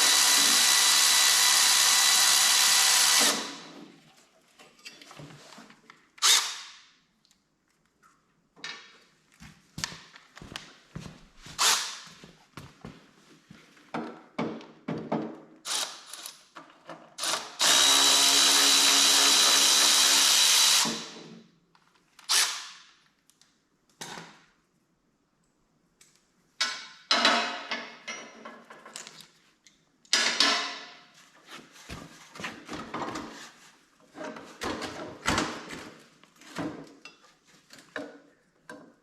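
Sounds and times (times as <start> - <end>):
power tool running: 0.0 - 3.7, 17.2 - 21.2
tools knocking and clicking: 26.6 - 29.2, 30.0 - 31.0.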